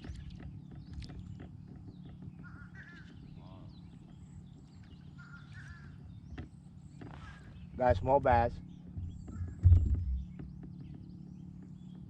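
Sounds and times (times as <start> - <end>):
bird calling: 2.0 - 6.4
low steady rumble: 2.4 - 12.0.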